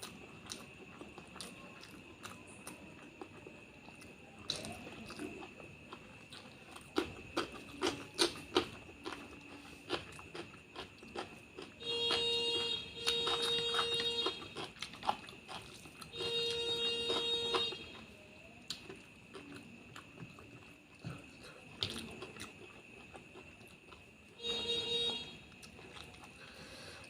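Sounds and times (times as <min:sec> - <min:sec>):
person chewing and eating: 0:00.0 - 0:27.0
buzzer tone: 0:11.8 - 0:14.4, 0:16.1 - 0:18.0, 0:24.4 - 0:25.4.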